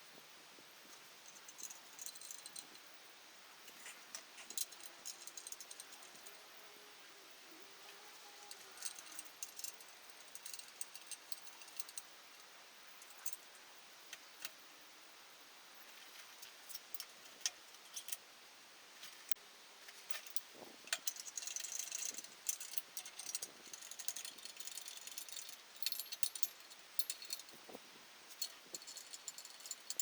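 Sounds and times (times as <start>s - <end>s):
metal tools clinking: 1.3s - 2.7s, 3.8s - 6.4s, 8.1s - 12.1s, 20.1s - 27.6s, 28.3s - 30.0s.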